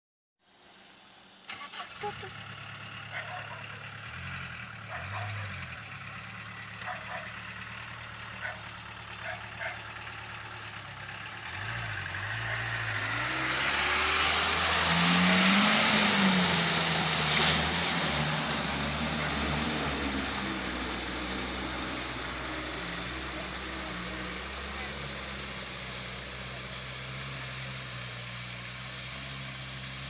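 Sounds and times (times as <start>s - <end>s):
diesel engine idling and revving: 0.4s - 30.0s.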